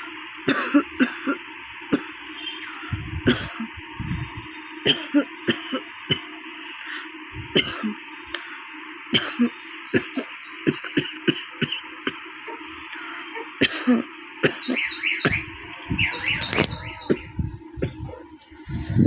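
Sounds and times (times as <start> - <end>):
woman coughing: 0.5 - 2.2, 3.2 - 3.8, 4.9 - 6.3, 7.5 - 8.0, 9.2 - 12.2, 13.6 - 14.8.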